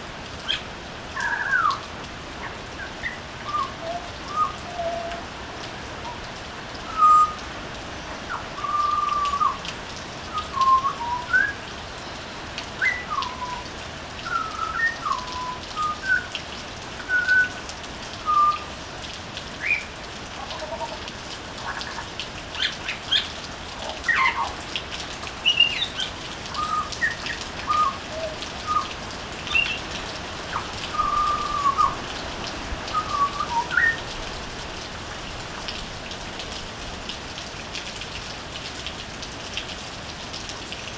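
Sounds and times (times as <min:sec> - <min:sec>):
rain patter: 0:00.0 - 0:40.9
bird singing whistled notes: 0:01.2 - 0:01.8, 0:02.8 - 0:05.2, 0:06.9 - 0:07.4, 0:08.3 - 0:09.6, 0:10.3 - 0:12.2, 0:12.8 - 0:13.6, 0:14.2 - 0:16.3, 0:17.0 - 0:17.6, 0:18.3 - 0:18.7, 0:25.4 - 0:28.9, 0:29.5 - 0:29.8, 0:30.5 - 0:32.0, 0:32.9 - 0:34.0.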